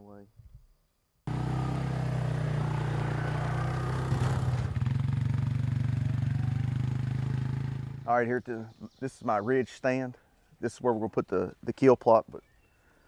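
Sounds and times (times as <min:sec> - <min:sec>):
atv engine running: 0:01.3 - 0:08.1.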